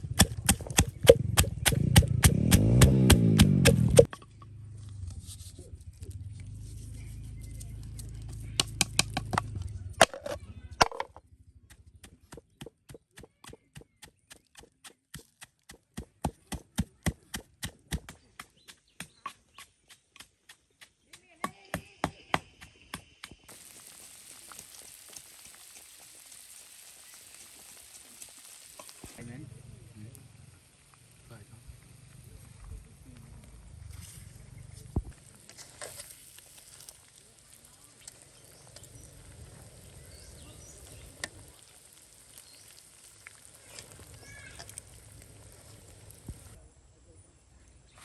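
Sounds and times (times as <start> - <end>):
knife chopping on wooden board: 0.1 - 4.1
sizzling hiss: 23.3 - 34.0, 35.0 - 46.6.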